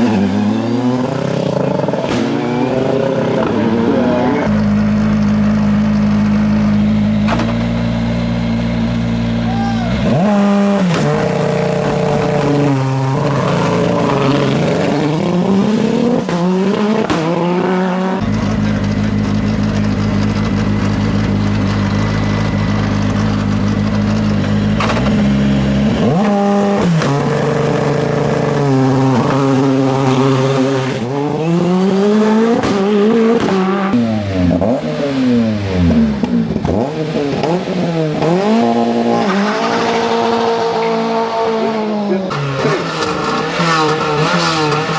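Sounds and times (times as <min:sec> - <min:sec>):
race car accelerating through gears: 0:00.0 - 0:44.9
race car engine revving: 0:00.0 - 0:44.9.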